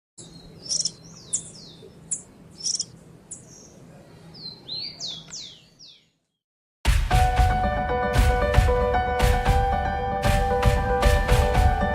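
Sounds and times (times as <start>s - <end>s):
bird chirping and whistling: 4.4s - 6.1s.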